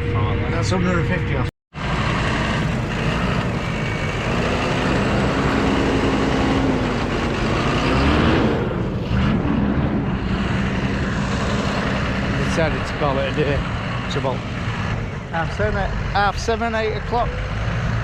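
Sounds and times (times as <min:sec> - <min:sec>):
tractor engine running under load: 0:01.8 - 0:09.0.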